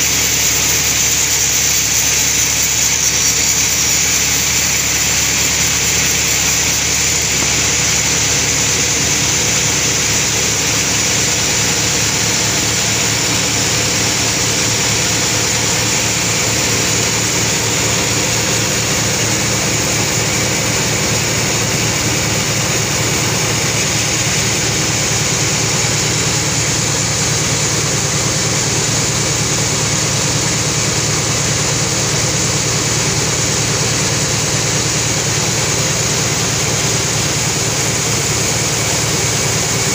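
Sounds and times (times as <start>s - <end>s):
high hiss: 0.0s - 12.5s
sawmill machinery hum: 0.0s - 39.9s.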